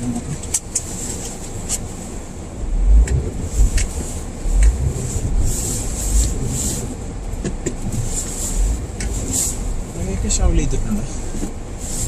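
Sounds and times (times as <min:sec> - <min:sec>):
wind thumps on microphone: 0:02.6 - 0:11.7.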